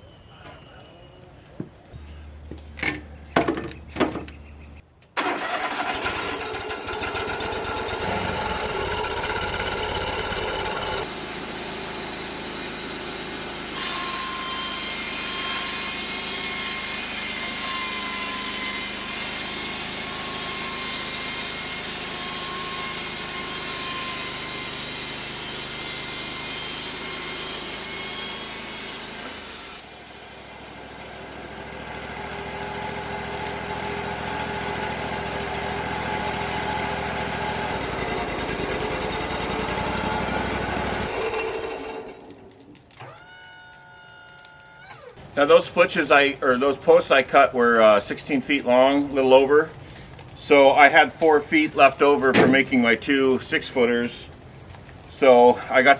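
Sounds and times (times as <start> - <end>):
sawmill engine running: 5.2 - 43.2, 44.9 - 55.9
saw blade cutting wood: 7.2 - 43.2.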